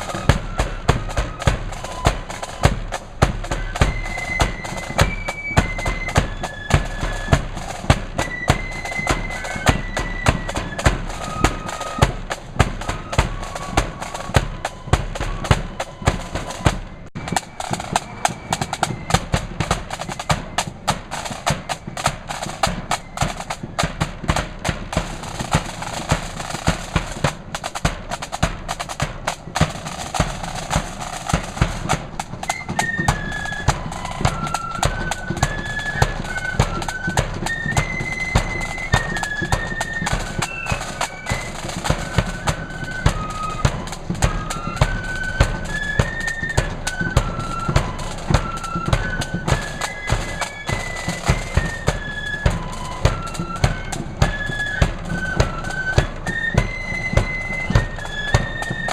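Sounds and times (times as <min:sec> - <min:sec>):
bass drums: 0:00.0 - 0:23.0
flute melody: 0:00.0 - 0:58.9
snare drums: 0:00.0 - 0:58.9.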